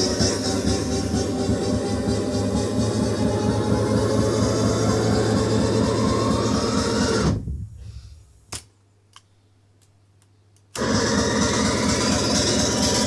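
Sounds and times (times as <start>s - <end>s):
music from cassette deck: 0.0s - 7.4s.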